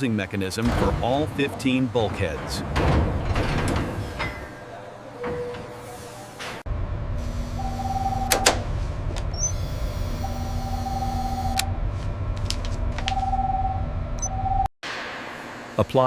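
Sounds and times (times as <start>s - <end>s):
low machinery hum: 6.7s - 14.6s
electronic tone: 7.2s - 8.6s, 9.3s - 11.7s, 13.0s - 14.7s.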